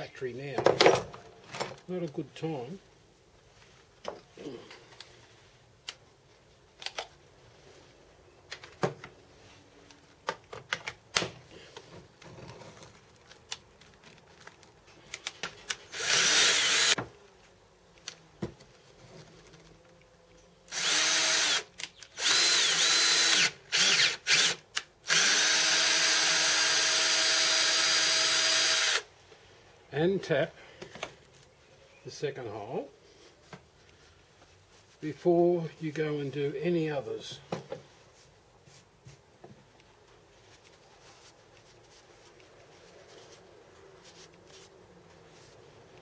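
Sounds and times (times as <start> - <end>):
electric drill whining: 15.9 - 17.0, 20.7 - 29.1.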